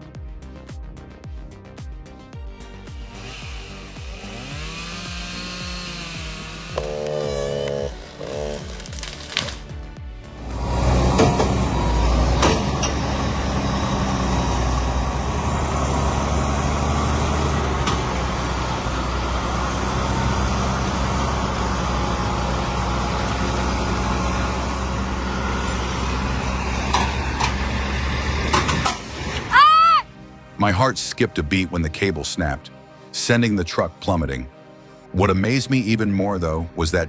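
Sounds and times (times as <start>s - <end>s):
large vehicle engine running: 10.2s - 29.6s
sharp clicks or knocks: 10.8s - 14.2s, 26.7s - 29.4s.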